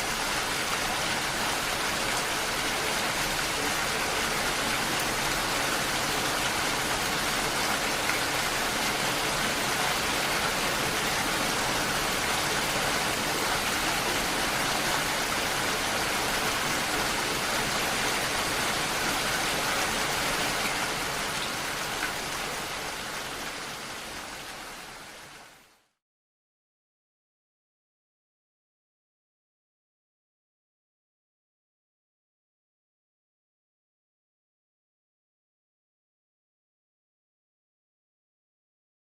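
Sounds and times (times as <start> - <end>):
steady rain: 0.0 - 26.0.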